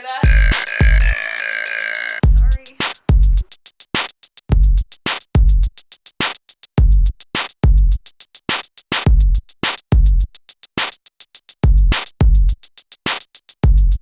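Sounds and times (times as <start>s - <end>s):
hi-hat clicks: 0.0s - 14.0s
kick drum thuds: 0.2s - 1.2s, 2.2s - 3.5s, 4.5s - 4.8s, 5.4s - 5.7s, 6.8s - 8.0s, 9.1s - 10.3s, 11.6s - 12.6s, 13.6s - 14.0s.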